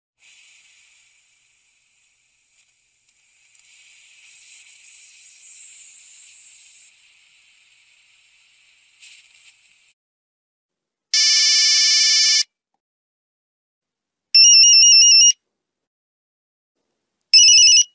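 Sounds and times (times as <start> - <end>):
faint high hiss: 0.2 - 10.0
buzzy electronic ringtone beep: 17.4 - 17.9.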